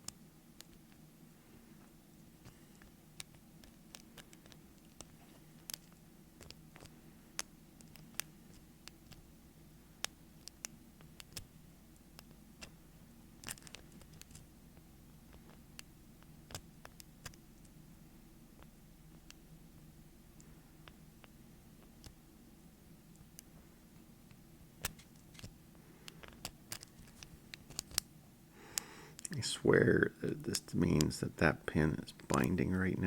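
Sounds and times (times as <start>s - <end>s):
faint low hum: 0.0s - 33.0s
lock pick clicking and scratching: 26.2s - 28.1s.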